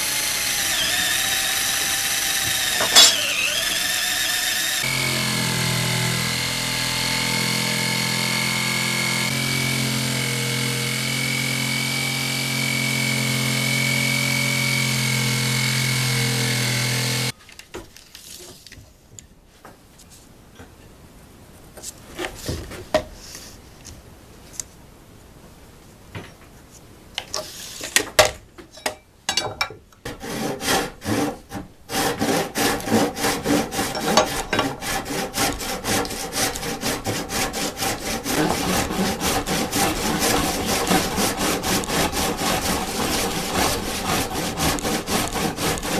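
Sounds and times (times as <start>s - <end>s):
electric drill boring wood: 0.0s - 17.3s
handsaw cutting wood: 0.0s - 17.3s, 30.1s - 45.9s.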